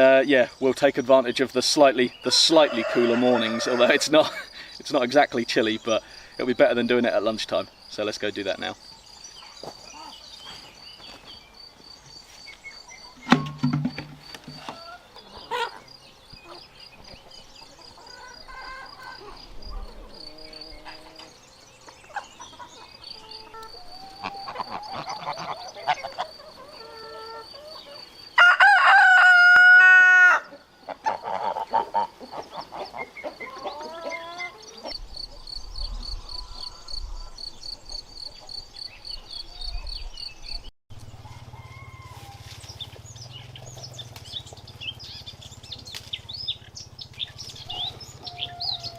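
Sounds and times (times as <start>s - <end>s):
rooster crowing: 2.5s - 4.3s, 26.6s - 30.6s, 41.1s - 42.6s, 47.6s - 48.9s
chicken clucking: 14.5s - 21.2s, 22.0s - 28.2s, 30.5s - 35.0s.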